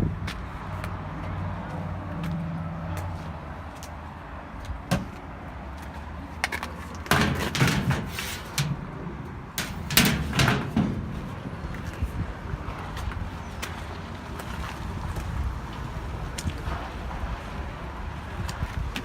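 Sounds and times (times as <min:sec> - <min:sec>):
vehicle rumbling: 0:00.0 - 0:19.0
rattling knocking noise: 0:07.1 - 0:08.9, 0:09.5 - 0:11.4.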